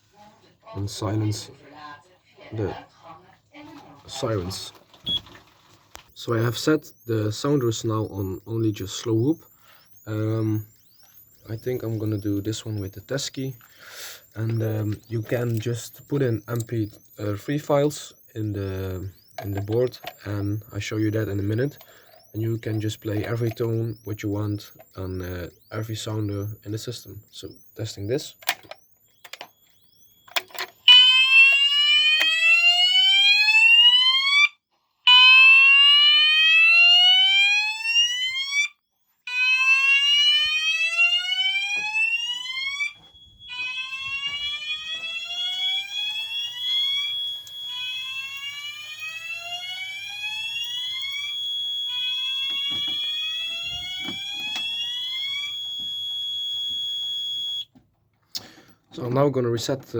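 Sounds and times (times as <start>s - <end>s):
fire alarm whooping sweeps: 6.0s - 57.7s
steady high tone: 6.2s - 32.5s.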